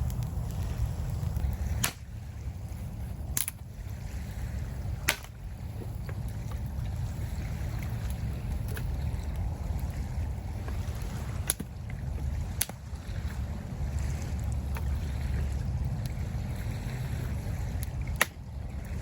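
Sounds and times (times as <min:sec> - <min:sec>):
surf rumble: 0:00.0 - 0:19.0
wind on microphone: 0:00.0 - 0:19.0
sharp snaps: 0:01.8 - 0:02.1, 0:03.4 - 0:03.6.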